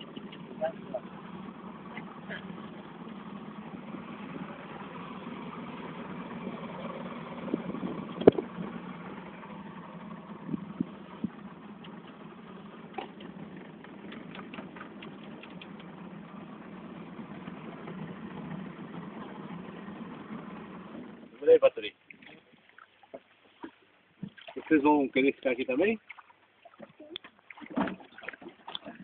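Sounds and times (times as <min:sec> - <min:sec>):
boat motor humming: 0:00.0 - 0:24.4
knocks and ticks: 0:08.2 - 0:08.5, 0:11.8 - 0:16.1.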